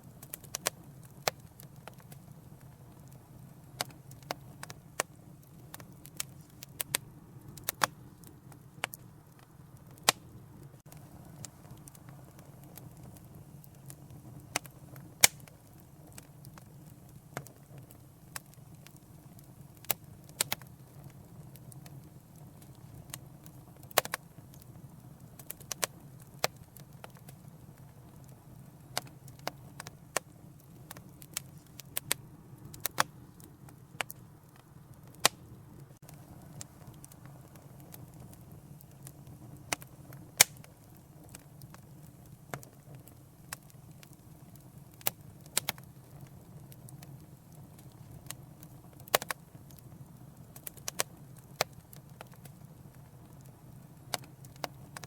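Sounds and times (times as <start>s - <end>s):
low rumble of flames: 0.0s - 55.0s
wood fire crackling and popping: 0.0s - 55.0s.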